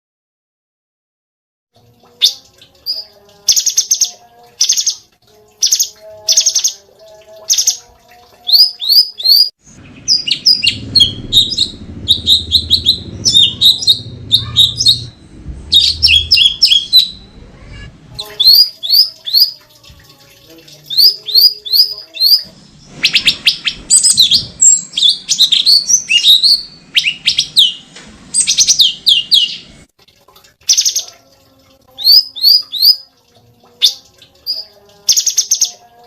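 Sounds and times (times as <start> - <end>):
songbird singing: 5.6 - 7.8, 8.4 - 19.6, 20.8 - 29.7, 32.0 - 33.1, 33.8 - 35.9
low rumble: 9.6 - 18.2.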